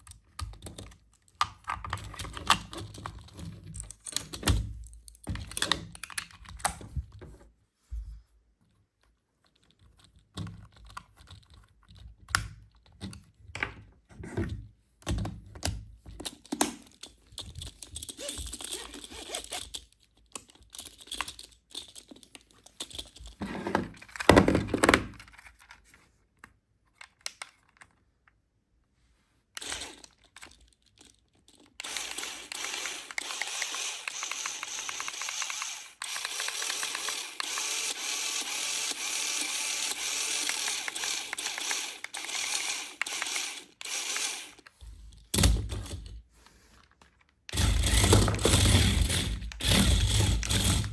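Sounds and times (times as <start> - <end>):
toy motor whirring: 17.8 - 20.0, 29.6 - 30.5, 31.5 - 44.8, 47.5 - 50.9.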